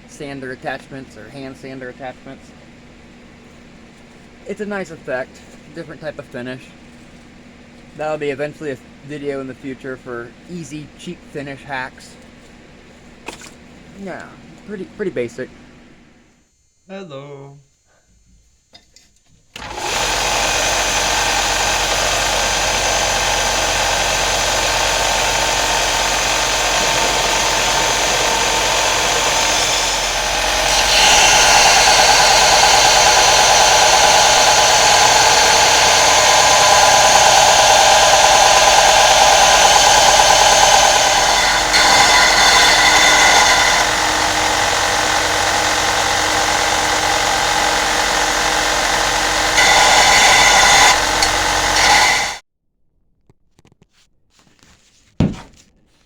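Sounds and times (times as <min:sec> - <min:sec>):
power sander grinding steel: 0:19.6 - 0:52.4.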